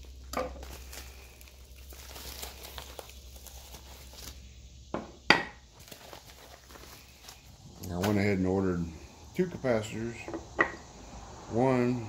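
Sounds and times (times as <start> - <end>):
plastic packaging crinkling: 0.0 - 4.5, 5.6 - 8.4.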